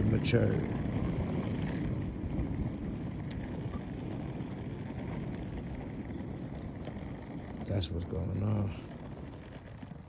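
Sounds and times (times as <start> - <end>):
low outdoor rumble: 0.0 - 10.0.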